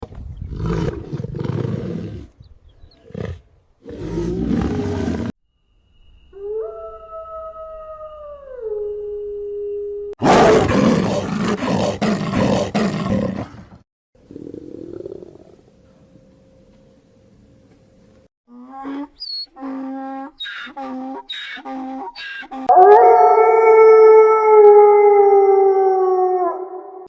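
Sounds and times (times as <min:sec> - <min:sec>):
large animal roars and growls: 0:03.0 - 0:05.3, 0:10.2 - 0:15.7.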